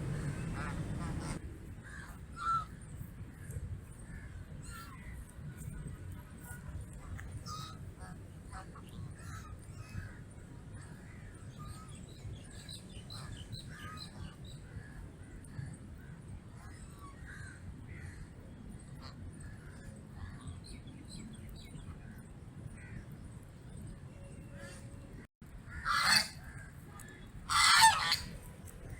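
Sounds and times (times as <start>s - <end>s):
geese honking: 0.0s - 1.4s, 25.7s - 26.6s, 27.5s - 28.4s
steady low rumble: 0.0s - 28.9s.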